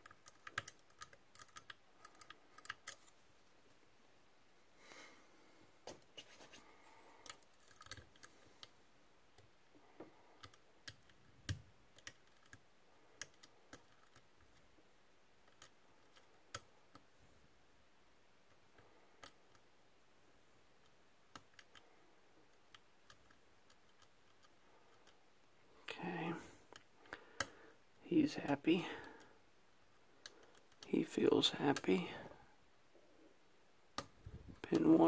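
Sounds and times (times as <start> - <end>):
lock pick clicks and scratching: 0.0 - 3.2, 7.2 - 8.3, 10.4 - 12.6, 13.2 - 14.6.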